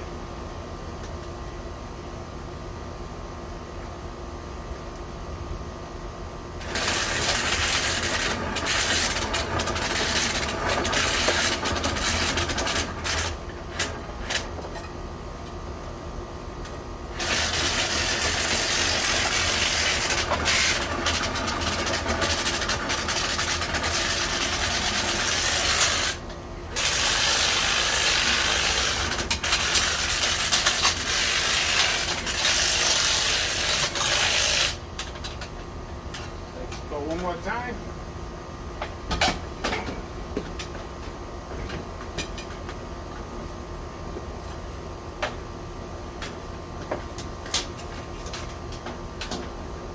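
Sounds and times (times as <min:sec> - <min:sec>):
rotary brush scraping in duct: 0:06.6 - 0:14.3, 0:17.2 - 0:34.8.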